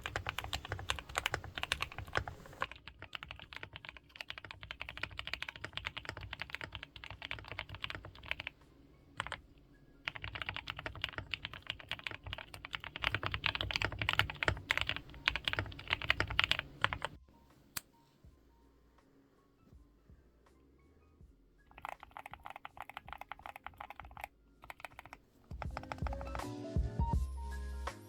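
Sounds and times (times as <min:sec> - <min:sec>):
fast typing on mechanical keyboard: 0:00.0 - 0:08.6, 0:09.2 - 0:09.4, 0:10.1 - 0:17.2, 0:21.7 - 0:26.4.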